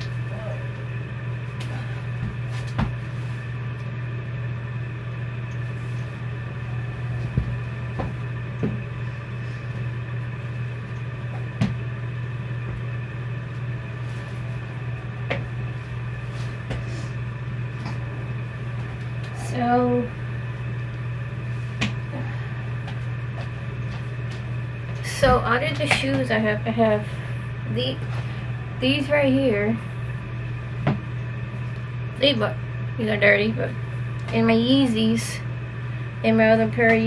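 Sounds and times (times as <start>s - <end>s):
electrical hum: 0.0s - 37.0s.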